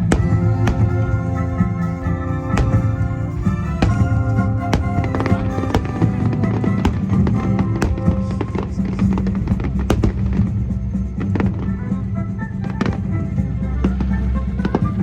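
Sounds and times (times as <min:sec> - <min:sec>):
fireworks bangs: 0:00.1 - 0:10.4.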